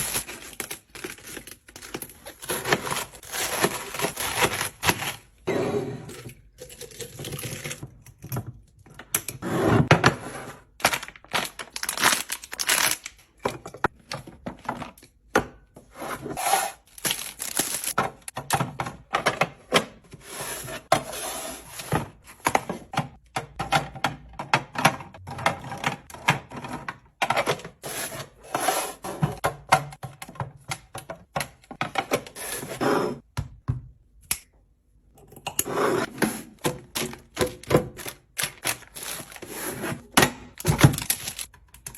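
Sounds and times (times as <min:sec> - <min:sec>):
groceries set into a fridge: 0:00.0 - 0:05.4, 0:10.7 - 0:15.3, 0:16.7 - 0:20.0, 0:36.2 - 0:41.9.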